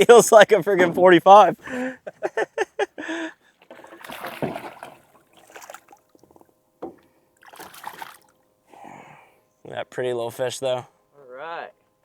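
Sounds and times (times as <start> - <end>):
water splashing against boat: 3.6 - 8.4
sharp knocks: 6.3 - 7.1.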